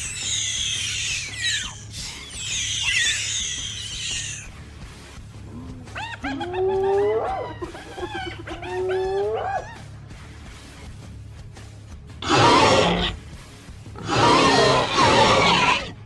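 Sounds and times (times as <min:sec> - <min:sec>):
creature calls bending upward: 0:00.0 - 0:04.5.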